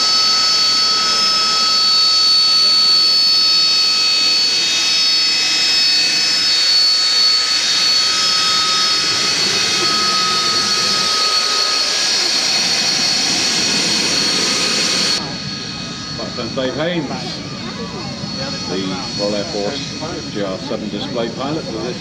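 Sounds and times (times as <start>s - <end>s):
jet engine roaring with whine: 0.0s - 22.0s.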